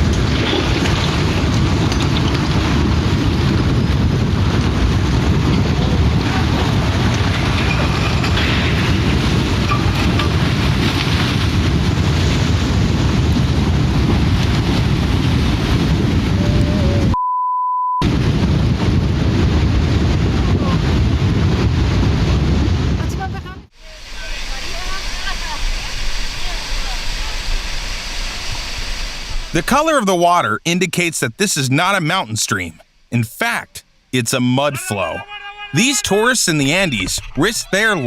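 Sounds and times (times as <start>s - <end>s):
wind buffeting microphone: 0.0s - 17.2s, 18.0s - 27.7s.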